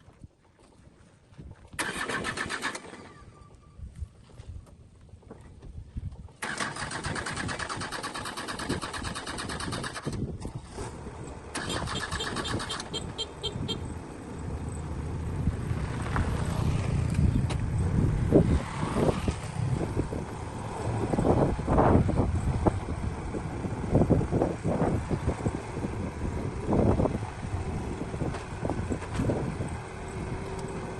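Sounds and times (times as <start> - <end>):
rapid mechanical clatter: 6.4 - 10.4
deep diesel engine rumble: 6.4 - 30.9.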